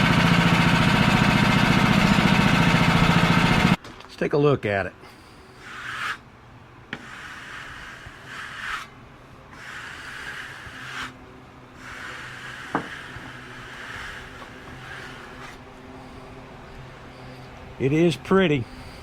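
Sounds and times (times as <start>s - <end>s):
engine idling: 0.0s - 3.8s
rubbing strokes on wood: 5.4s - 6.2s, 6.9s - 8.9s, 9.5s - 11.2s, 11.8s - 16.4s.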